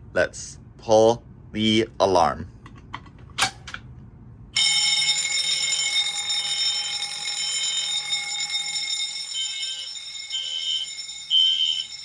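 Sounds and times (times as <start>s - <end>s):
fire alarm bells ringing: 4.6s - 12.0s
pulsing high alarm tone: 4.6s - 12.0s.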